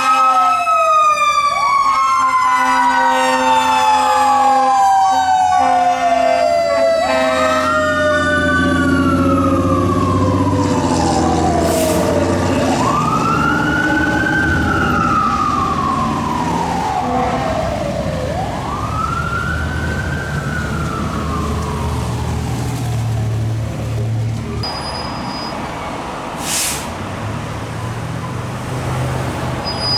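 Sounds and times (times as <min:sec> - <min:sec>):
fire engine siren wailing: 0:00.0 - 0:29.9
truck engine rumble: 0:07.1 - 0:29.9.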